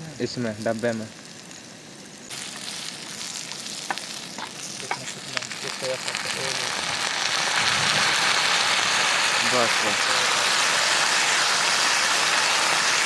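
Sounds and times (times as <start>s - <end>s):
gravy sizzling in a pan: 0.0s - 13.0s.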